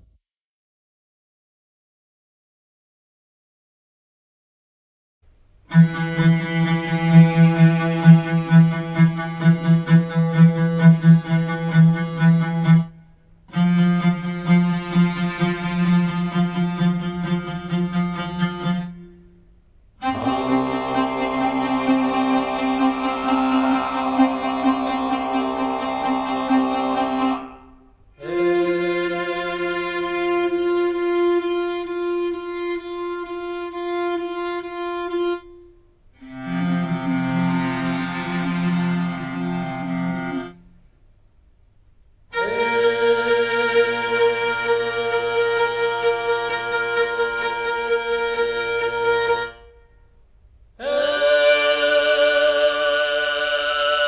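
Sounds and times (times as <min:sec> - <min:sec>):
bowed string instrument: 0:05.7 - 0:40.9, 0:42.3 - 0:50.0
bowed string instrument low note: 0:20.0 - 0:27.8.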